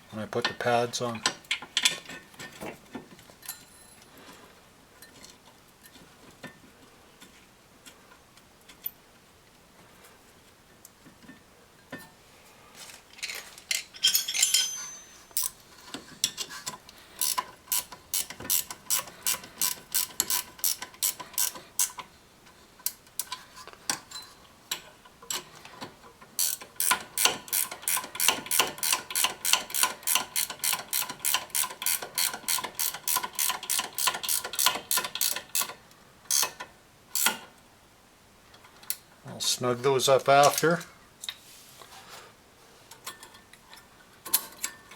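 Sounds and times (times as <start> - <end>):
socket ratchet clicking: 17.2 - 22.0, 26.4 - 36.6.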